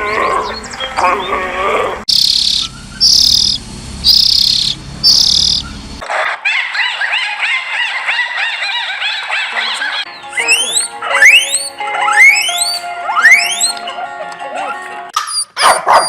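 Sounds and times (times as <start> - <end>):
high-pitched animal chirping: 2.1 - 5.8, 6.5 - 13.9, 15.2 - 16.0.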